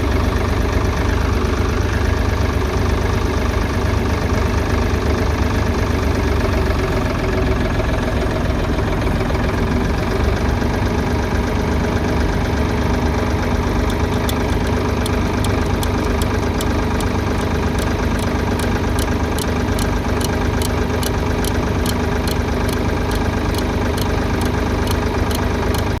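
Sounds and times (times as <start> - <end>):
tractor engine running: 0.0 - 26.0
light regular ticking: 13.7 - 26.0.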